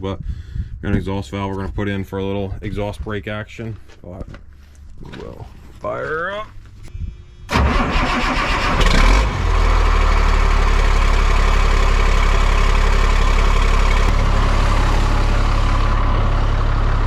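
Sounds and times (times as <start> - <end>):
diesel truck engine idling: 7.5 - 17.0.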